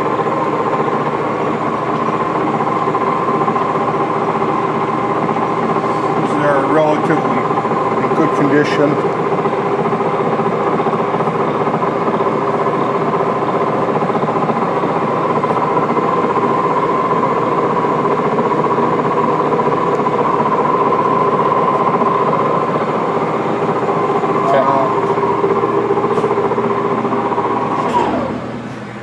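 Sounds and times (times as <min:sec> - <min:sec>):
lathe machine hum with whine: 0:00.0 - 0:29.0.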